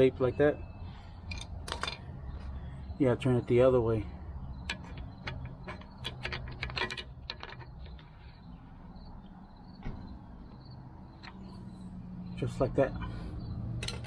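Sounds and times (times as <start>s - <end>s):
metal brake parts clinking: 1.2s - 2.1s, 4.6s - 8.2s, 13.8s - 14.0s.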